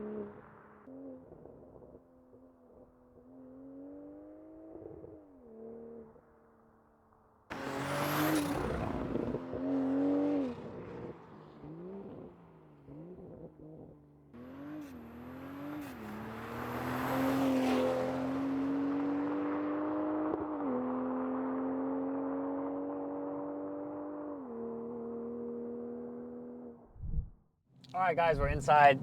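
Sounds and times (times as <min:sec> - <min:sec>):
car engine and exhaust passing: 0:14.3 - 0:22.9, 0:28.0 - 0:29.0.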